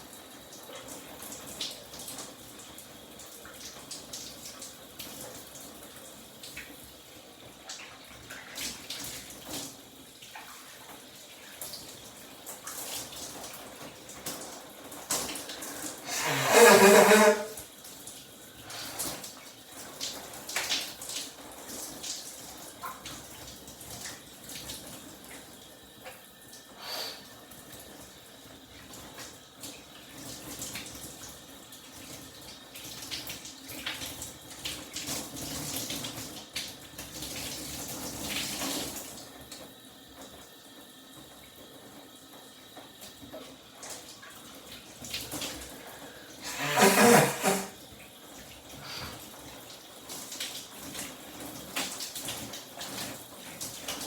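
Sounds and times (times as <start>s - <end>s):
shower water spraying: 15.0s - 17.7s, 45.3s - 47.8s.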